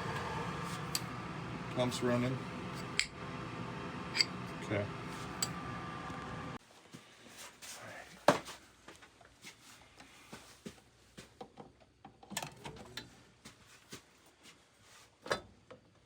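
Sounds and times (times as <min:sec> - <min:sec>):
water heater and pump humming: 0:00.0 - 0:06.6.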